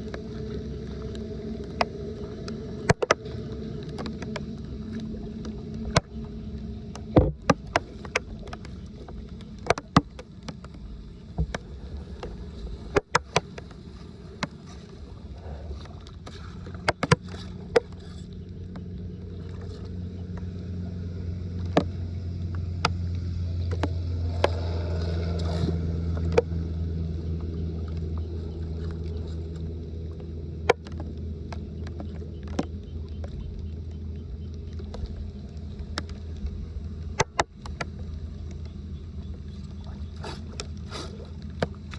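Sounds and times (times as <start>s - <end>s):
floodwater sloshing and draining: 0.0s - 41.9s
low rumble: 0.0s - 41.9s
sharp clicks and knocks: 2.9s - 3.2s, 6.9s - 13.8s, 21.6s - 24.6s, 30.6s - 35.2s, 35.8s - 39.4s.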